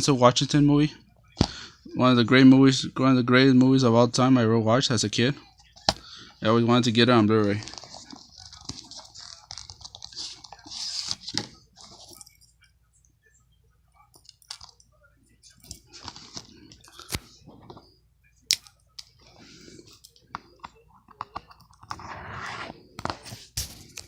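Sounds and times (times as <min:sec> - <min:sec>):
cardboard slipcover rustling: 0:07.5 - 0:12.2.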